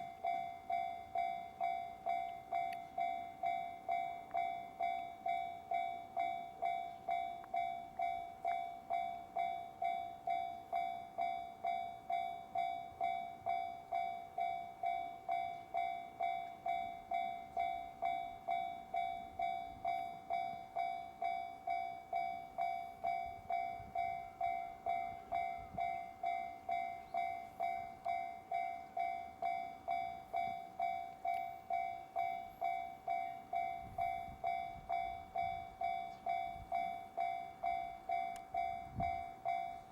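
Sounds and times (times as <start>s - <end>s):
level crossing bell ringing: 0.0s - 39.9s.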